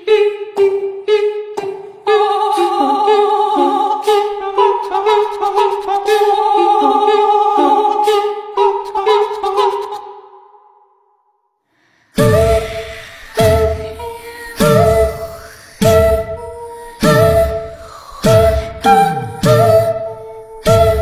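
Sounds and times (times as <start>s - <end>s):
music with vocal melody: 0.0s - 10.5s, 12.0s - 21.0s
music with singing voice: 12.2s - 21.0s.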